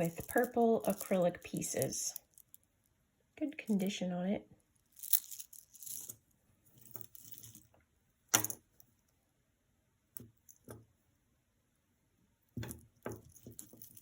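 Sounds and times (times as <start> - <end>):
beads and metal pieces clinking: 0.0 - 2.7, 4.8 - 6.2, 6.8 - 7.7, 13.1 - 14.0.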